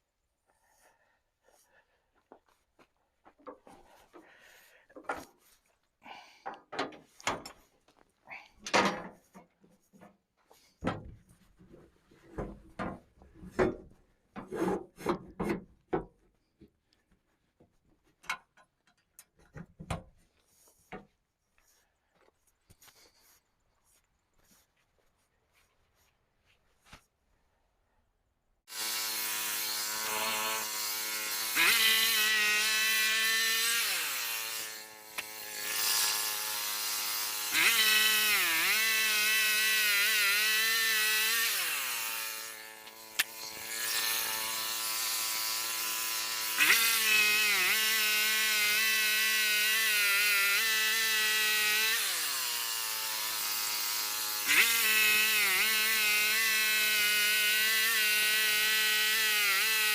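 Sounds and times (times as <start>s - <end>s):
bandsaw mill sawing log: 13.2s - 15.7s, 28.7s - 59.9s.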